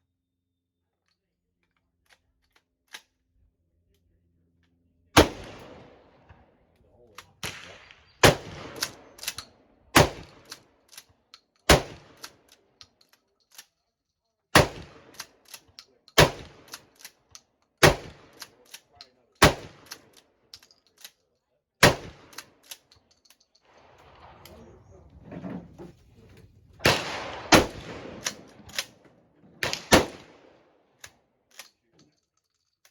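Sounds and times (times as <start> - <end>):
shotgun shots with echo: 5.2 - 6.4, 7.4 - 9.2, 9.9 - 10.5, 11.7 - 12.2, 14.6 - 15.2, 16.2 - 16.8, 17.8 - 18.4, 19.4 - 19.9, 21.8 - 22.4, 26.8 - 29.0, 29.6 - 30.7.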